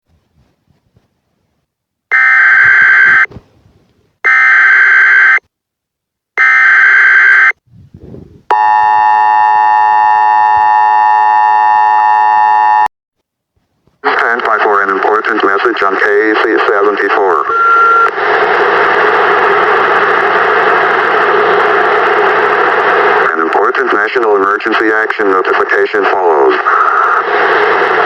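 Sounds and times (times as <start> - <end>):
two-tone attention signal: 17.5 - 18.1.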